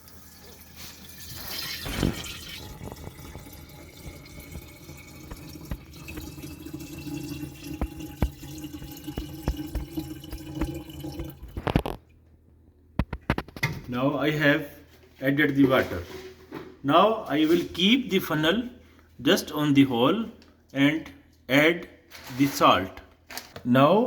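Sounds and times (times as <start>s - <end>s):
water pouring and gurgling: 0.0s - 12.0s.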